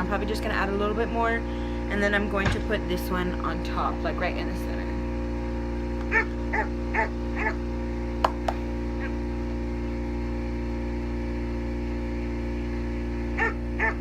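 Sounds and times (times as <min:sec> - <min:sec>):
droning machine hum: 0:00.0 - 0:14.0
small dog yipping: 0:06.1 - 0:07.6, 0:13.4 - 0:14.0.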